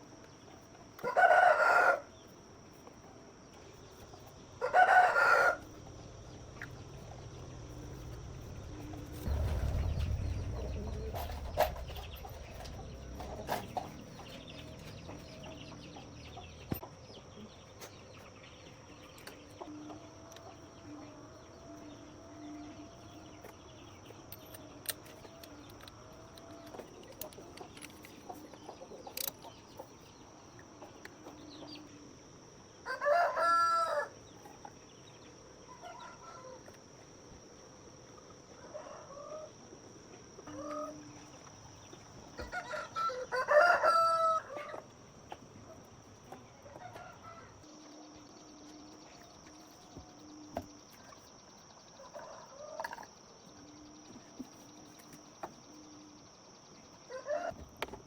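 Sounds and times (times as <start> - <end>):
rooster crowing: 1.0 - 2.1, 4.6 - 5.8, 32.8 - 34.1, 42.4 - 44.8, 57.1 - 57.6
low rumble: 5.8 - 16.5.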